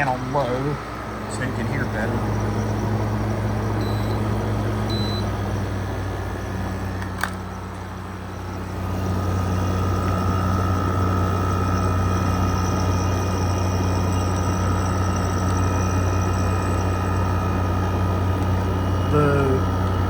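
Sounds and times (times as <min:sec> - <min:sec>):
air conditioner hum and fan: 0:00.0 - 0:20.0
thin steady whine: 0:00.0 - 0:20.0
short high beeps: 0:04.9 - 0:05.3.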